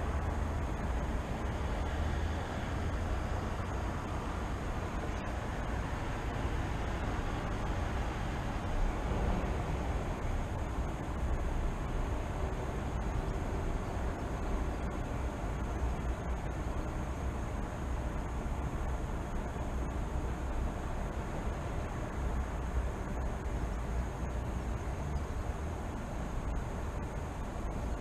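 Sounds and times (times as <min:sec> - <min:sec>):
faint high steady tone: 0:00.0 - 0:08.9
distant traffic rumble: 0:00.0 - 0:28.0.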